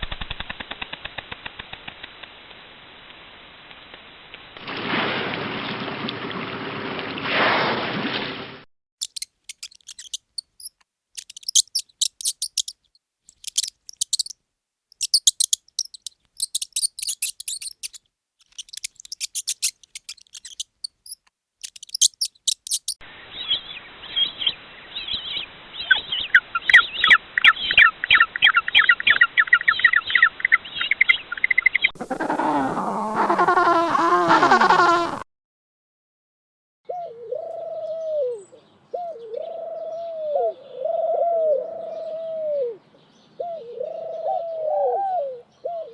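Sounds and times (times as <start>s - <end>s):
birdsong trill: 9.0s - 14.3s, 15.0s - 31.9s
high thin bird chirps: 9.0s - 32.0s.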